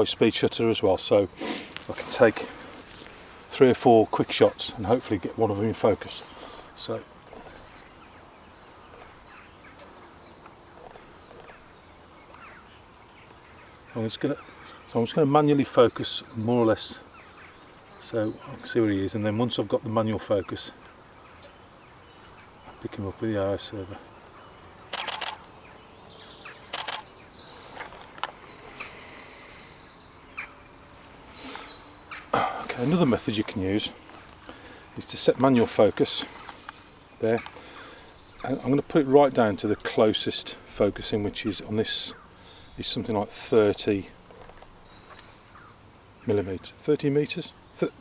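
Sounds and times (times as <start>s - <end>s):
distant bird chirps: 0.0s - 48.0s
camera shutter bursts: 24.9s - 25.5s, 26.7s - 27.1s
single camera shutter click: 24.9s - 25.5s, 26.7s - 27.1s.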